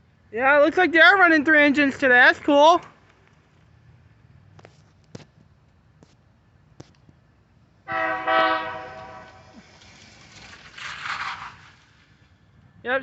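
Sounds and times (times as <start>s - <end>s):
locomotive air horn blast: 7.9s - 9.6s.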